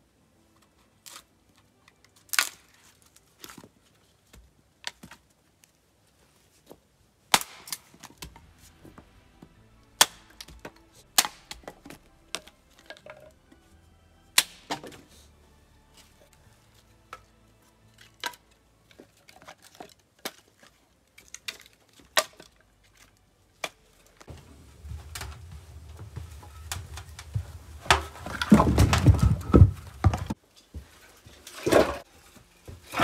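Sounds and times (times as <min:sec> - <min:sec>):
dry wood cracking and snapping: 0:01.0 - 0:05.8, 0:07.3 - 0:08.5, 0:09.9 - 0:13.4, 0:14.4 - 0:15.1, 0:17.9 - 0:30.4.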